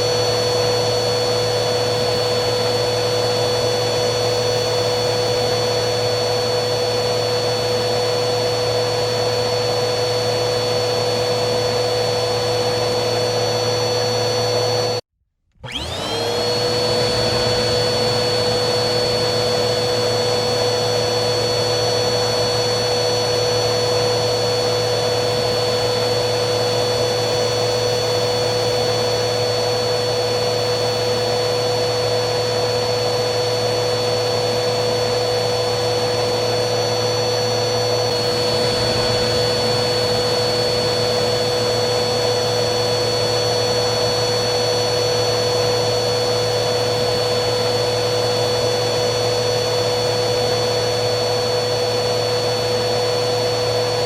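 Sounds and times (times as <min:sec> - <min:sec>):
vacuum cleaner motor whine: 0:00.0 - 0:54.0
rushing airflow: 0:38.0 - 0:44.2.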